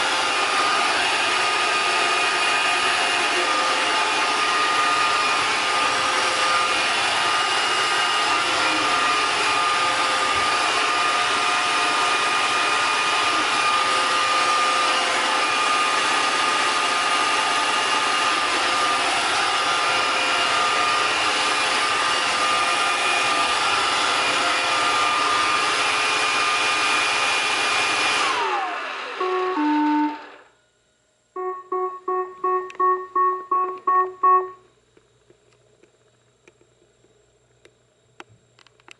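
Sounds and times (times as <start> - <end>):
robot vacuum motors whining: 0.0 - 30.4
short electronic beeps: 31.4 - 34.6.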